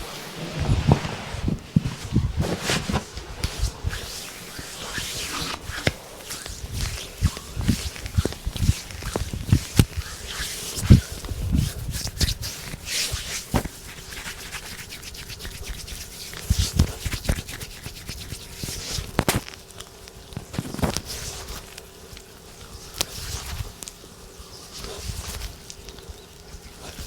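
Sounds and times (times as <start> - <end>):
hands rubbing skin: 0.0 - 19.3.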